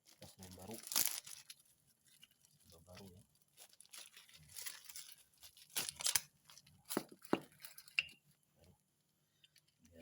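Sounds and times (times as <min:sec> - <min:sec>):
packaging rustling and tearing: 0:00.0 - 0:08.0.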